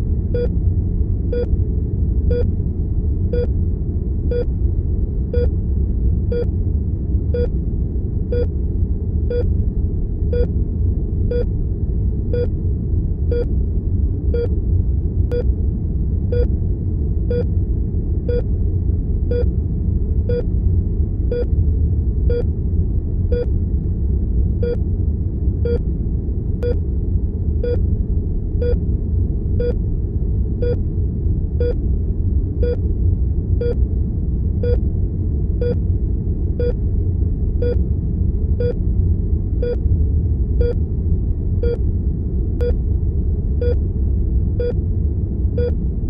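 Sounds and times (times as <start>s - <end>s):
low room rumble: 0.0s - 46.0s
heart monitor beeping: 1.3s - 1.5s, 5.3s - 5.5s, 12.3s - 12.5s, 14.3s - 14.5s, 18.3s - 18.5s, 25.6s - 25.8s, 31.6s - 31.8s, 33.6s - 33.8s, 35.6s - 35.8s, 45.6s - 45.8s.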